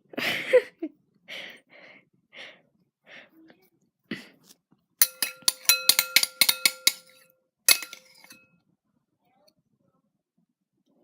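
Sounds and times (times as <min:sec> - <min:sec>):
metal spoon clinking on bowl: 0:05.0 - 0:08.4.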